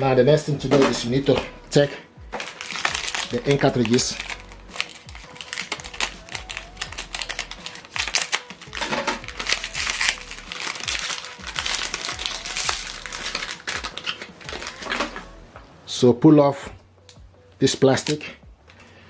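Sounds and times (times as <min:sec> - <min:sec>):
plastic packaging crinkling: 0:00.7 - 0:15.6.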